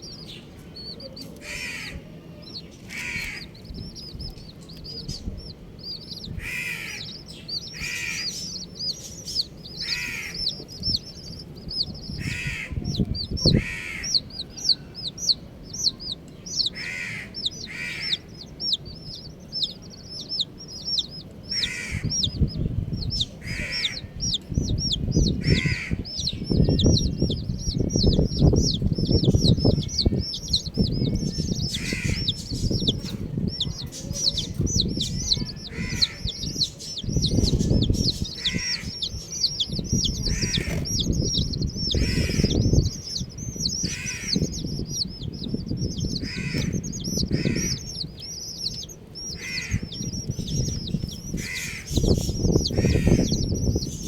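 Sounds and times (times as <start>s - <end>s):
baby chicks peeping: 0.0s - 54.0s.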